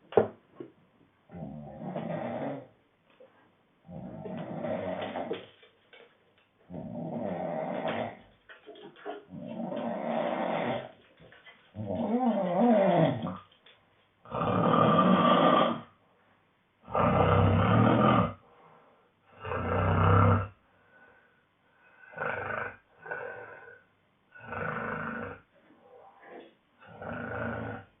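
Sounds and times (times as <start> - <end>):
man snoring: 1.4 - 2.7, 4.2 - 5.3, 14.3 - 15.9, 16.9 - 18.4, 19.4 - 20.6, 22.1 - 23.4, 24.4 - 25.4, 26.9 - 27.9.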